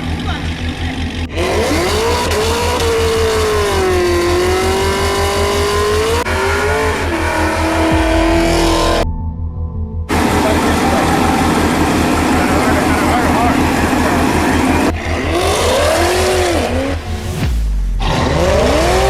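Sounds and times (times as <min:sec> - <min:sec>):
race car engine at full throttle: 0:00.0 - 0:09.0, 0:10.1 - 0:19.0
background music with bass beat: 0:05.4 - 0:19.0.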